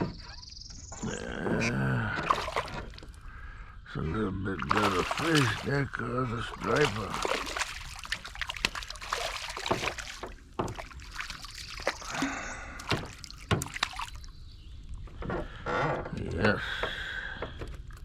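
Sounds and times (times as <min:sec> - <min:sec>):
water sloshing around boat: 0:01.1 - 0:18.0.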